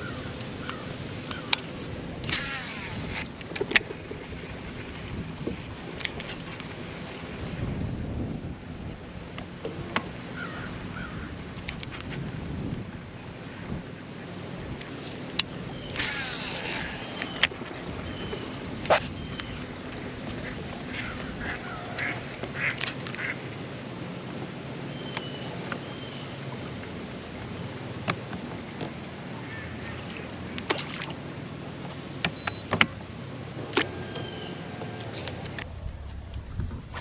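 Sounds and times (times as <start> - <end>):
ducks quacking: 20.4 - 23.4
steady low hum: 35.4 - 37.0.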